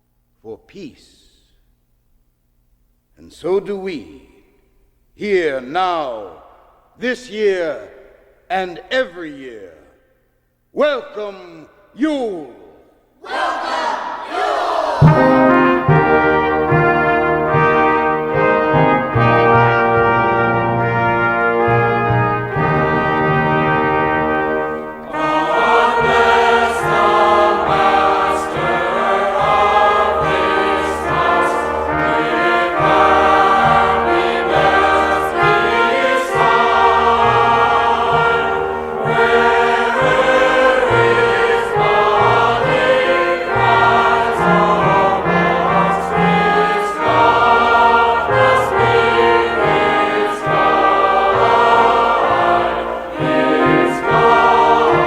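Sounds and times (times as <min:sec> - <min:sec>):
choir singing: 0:13.2 - 0:21.7, 0:22.4 - 0:55.0
brass chord: 0:14.9 - 0:55.0.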